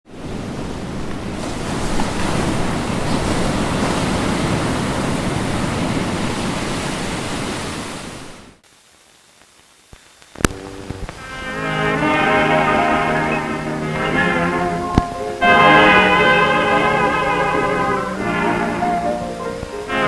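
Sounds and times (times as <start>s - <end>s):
ocean surf: 0.1s - 8.6s, 10.5s - 20.0s.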